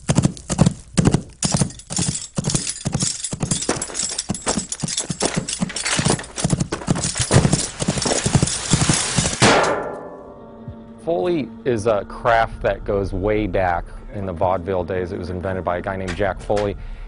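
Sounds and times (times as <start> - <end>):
horse hoofbeats clip-clopping: 0.0 - 9.6.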